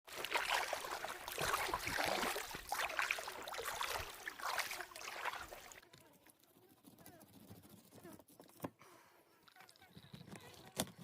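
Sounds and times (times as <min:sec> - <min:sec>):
water splashing and trickling: 0:00.0 - 0:06.5.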